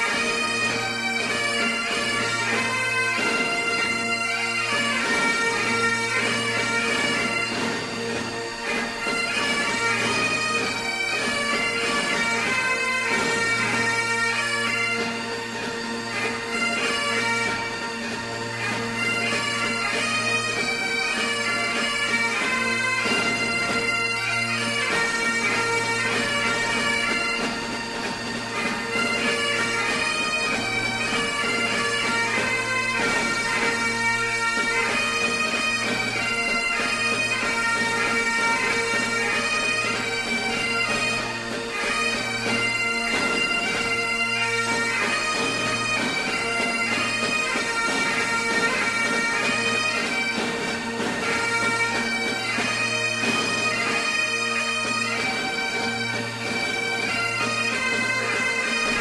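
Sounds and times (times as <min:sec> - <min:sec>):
bagpipe music: 0:00.0 - 0:59.0.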